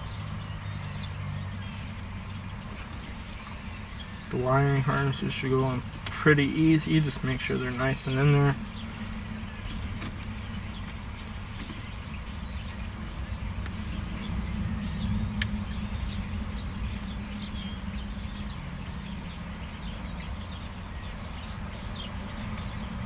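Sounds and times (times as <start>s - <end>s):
low outdoor rumble: 0.0s - 23.0s
faint sharp clicks: 15.4s - 15.6s.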